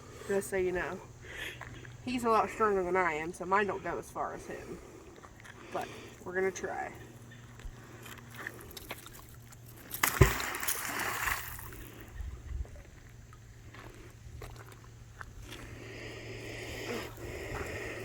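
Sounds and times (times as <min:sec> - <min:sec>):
magnet splashing into water: 0:09.9 - 0:11.8.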